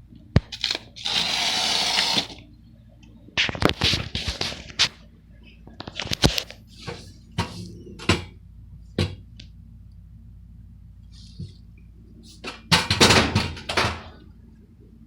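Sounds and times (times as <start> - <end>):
faint low hum: 0.0 - 15.0
rustling handling noise: 3.4 - 7.7.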